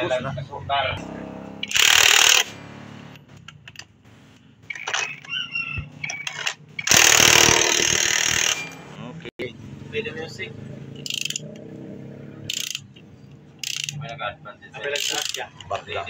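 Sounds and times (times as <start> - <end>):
power tool bursts: 1.6 - 2.7, 6.0 - 8.9
metallic clicks and clinks: 11.0 - 11.7, 12.5 - 14.2, 14.8 - 15.8.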